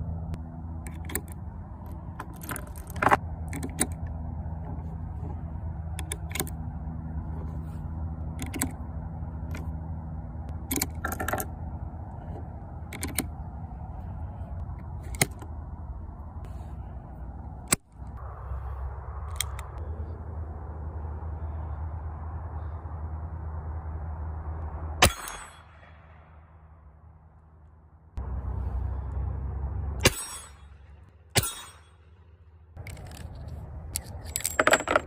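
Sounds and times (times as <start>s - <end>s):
steady low hum: 0.0s - 35.0s
revolver mechanism clicking: 12.9s - 13.4s.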